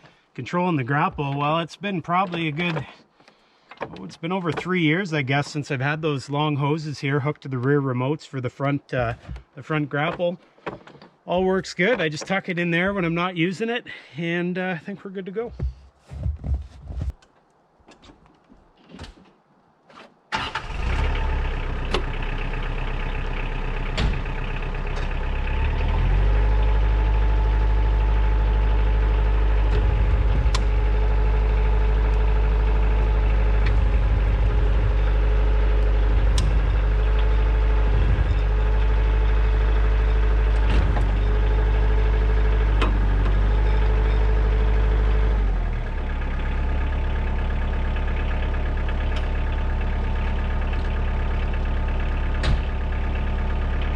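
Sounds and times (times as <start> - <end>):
tractor diesel engine running: 0.0 - 10.4, 20.3 - 53.9
steady whine: 29.5 - 41.4.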